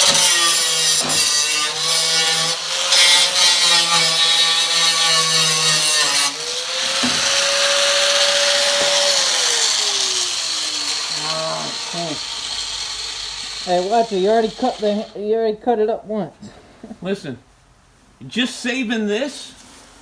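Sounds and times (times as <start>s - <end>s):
power tool whining on sheet metal: 0.0s - 15.2s.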